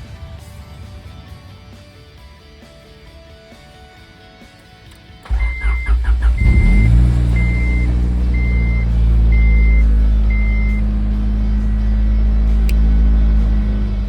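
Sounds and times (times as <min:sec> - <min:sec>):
car engine starting and idling: 0:05.2 - 0:14.0
high warning chime beeping: 0:05.3 - 0:10.9.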